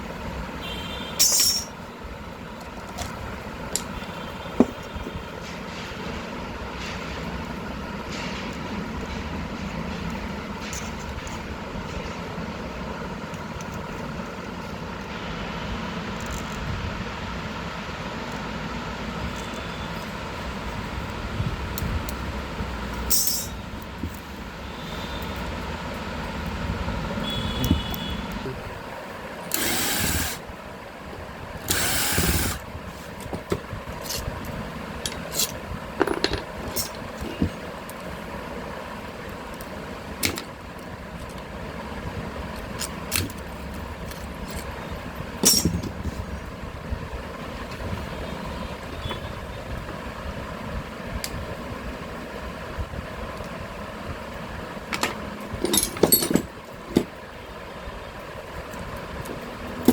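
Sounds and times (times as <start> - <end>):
tools and metal parts clicking: 1.2 - 1.9, 2.6 - 4.8, 8.1 - 12.2, 16.2 - 16.7, 22.9 - 24.2, 29.5 - 30.4, 31.6 - 32.6, 33.2 - 38.2, 42.5 - 44.8, 45.4 - 46.2, 54.9 - 57.1.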